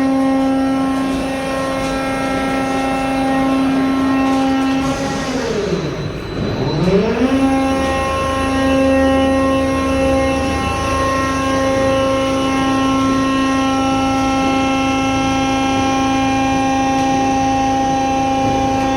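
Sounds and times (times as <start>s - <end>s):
hydraulic power unit whining: 0.0s - 18.9s.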